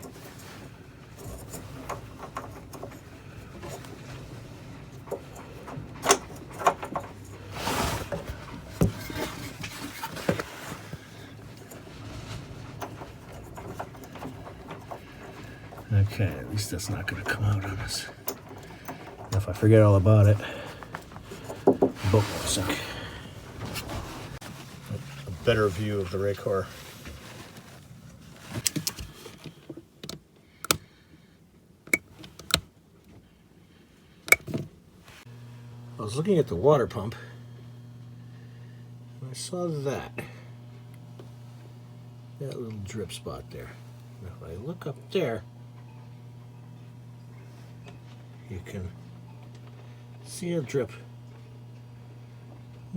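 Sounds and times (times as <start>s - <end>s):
sharp clicks and knocks: 34.3s - 34.7s.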